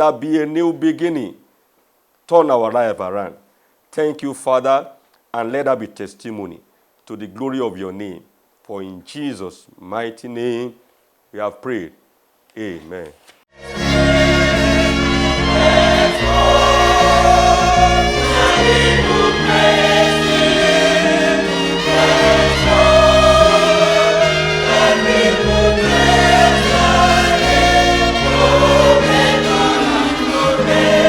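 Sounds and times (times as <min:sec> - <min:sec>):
bass and keyboard: 0:13.5 - 0:31.0
choir singing gospel: 0:13.6 - 0:31.0.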